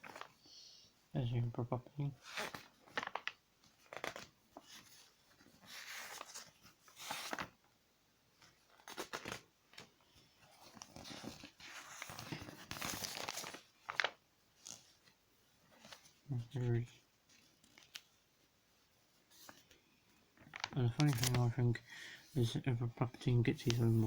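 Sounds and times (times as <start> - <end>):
packaging rustling and crinkling: 2.4 - 7.5, 8.4 - 15.1, 20.4 - 21.6, 23.5 - 24.0.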